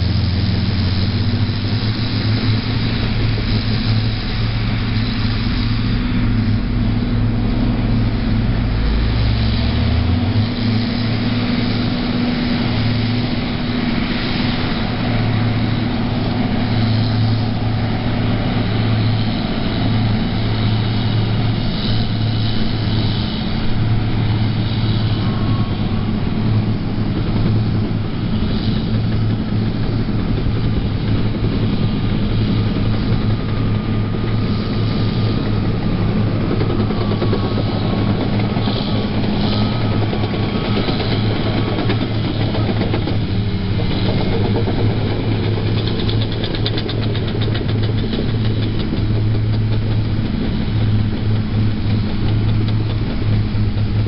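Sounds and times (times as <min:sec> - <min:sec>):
bulldozer diesel engine droning: 0:00.0 - 0:54.0.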